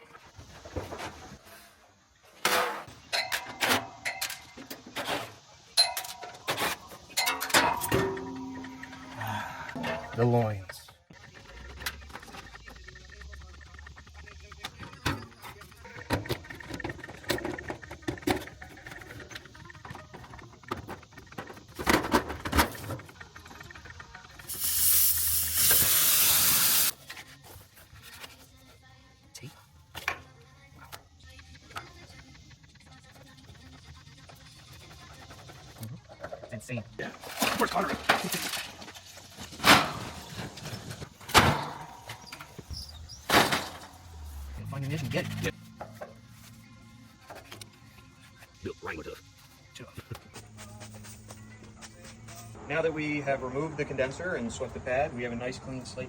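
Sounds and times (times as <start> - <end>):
metal tool clanks and taps: 5.8 - 6.5
gas hissing: 24.4 - 27.0.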